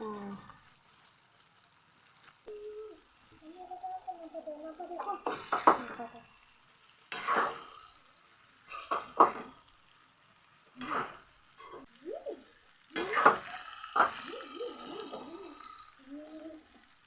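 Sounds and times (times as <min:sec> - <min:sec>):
faint sizzle: 0:00.0 - 0:17.0
spoon scraping a pan: 0:07.1 - 0:09.7, 0:10.8 - 0:12.0, 0:13.0 - 0:14.3.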